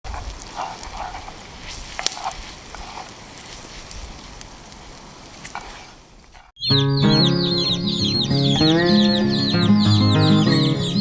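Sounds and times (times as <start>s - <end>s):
fire crackling: 0.0s - 6.6s.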